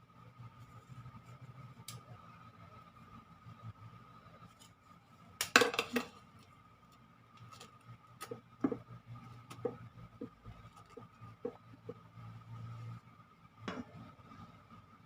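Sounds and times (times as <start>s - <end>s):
faint steady hum: 0.0s - 15.0s
kitchenware clinking and clattering: 5.4s - 6.2s.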